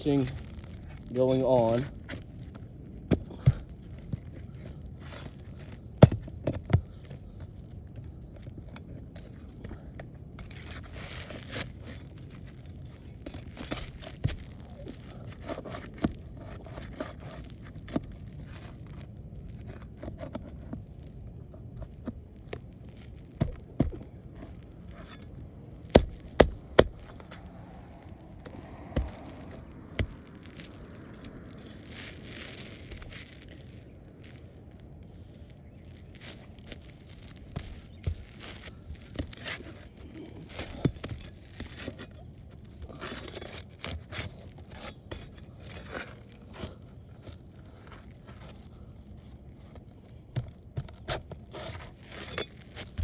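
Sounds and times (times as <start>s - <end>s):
metal bar scraping under shingles: 23.4s - 33.8s, 37.4s - 48.7s, 50.9s - 53.0s
steady low rumble: 23.4s - 36.2s.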